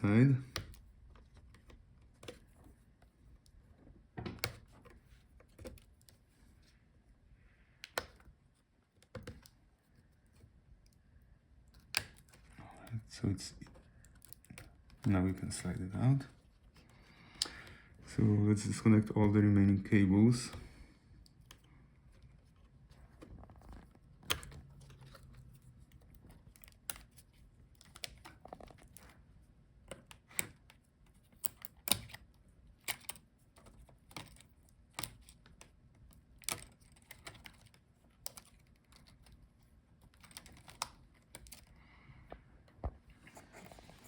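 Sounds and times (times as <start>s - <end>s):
connectors clicking and tapping: 29.8s - 43.8s.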